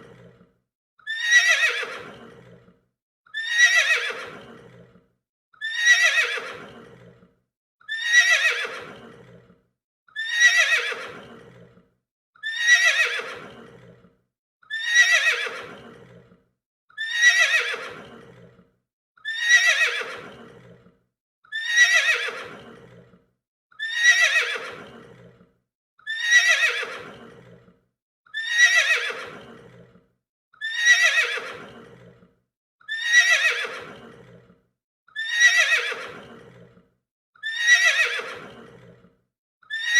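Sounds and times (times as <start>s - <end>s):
horse whinnying: 1.0s - 2.6s, 3.3s - 5.0s, 5.6s - 7.2s, 7.9s - 9.4s, 10.2s - 11.7s, 12.4s - 14.0s, 14.7s - 16.3s, 17.0s - 18.5s, 19.2s - 20.8s, 21.5s - 23.1s, 23.8s - 25.4s, 26.1s - 27.6s, 28.3s - 29.9s, 30.6s - 32.2s, 32.9s - 34.4s, 35.2s - 36.8s, 37.4s - 39.0s.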